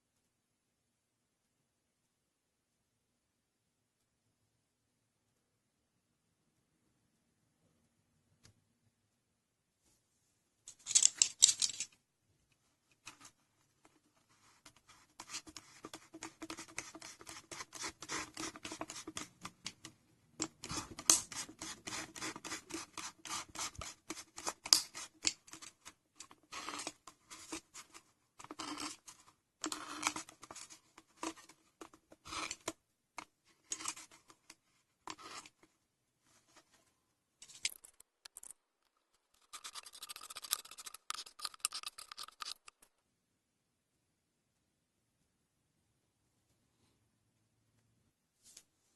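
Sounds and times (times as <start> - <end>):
scratchy strokes on craft materials: 13.0 - 19.8, 20.4 - 32.8, 33.5 - 36.9, 39.2 - 42.8.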